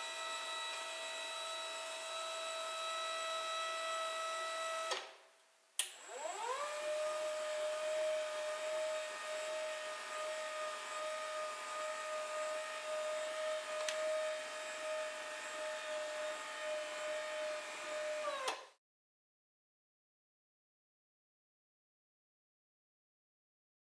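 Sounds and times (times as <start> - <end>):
hydraulic pump motor whining: 5.8 - 18.7.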